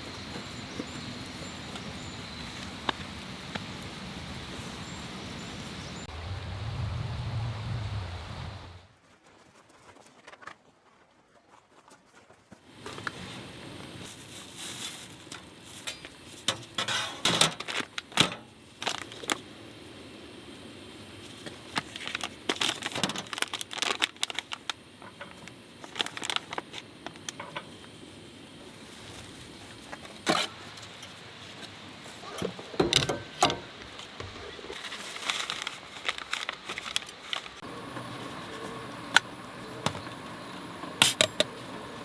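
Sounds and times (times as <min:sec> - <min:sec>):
crinkling and sharp clicks: 0:12.7 - 0:40.4.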